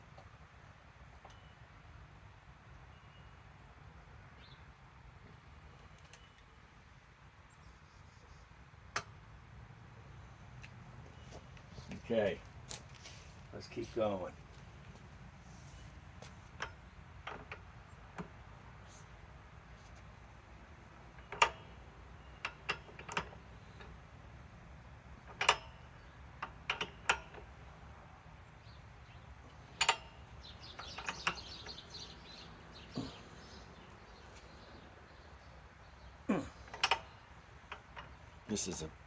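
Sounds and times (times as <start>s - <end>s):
metal tools clinking: 29.6s - 32.1s.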